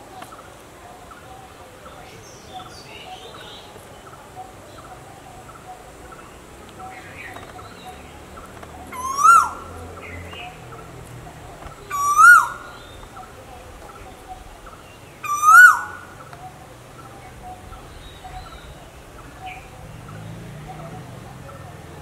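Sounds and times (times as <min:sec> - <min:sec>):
bird whistled call: 0:08.9 - 0:09.7, 0:11.8 - 0:13.0, 0:15.2 - 0:16.1.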